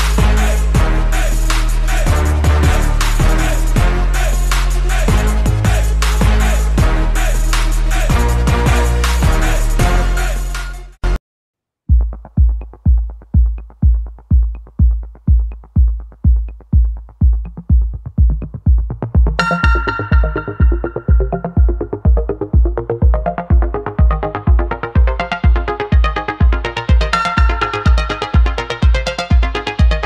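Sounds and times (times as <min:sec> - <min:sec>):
electronic music kick drum: 0:00.0 - 0:10.0, 0:11.9 - 0:30.0
plucked synth notes: 0:12.0 - 0:30.0.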